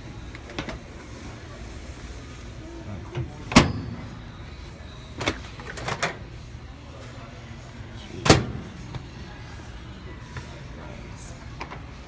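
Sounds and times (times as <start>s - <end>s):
microwave door clunk: 3.5s - 4.0s.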